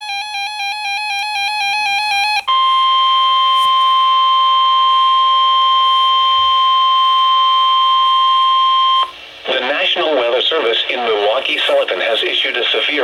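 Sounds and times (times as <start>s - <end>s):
piercing alarm tone: 0.0s - 9.1s.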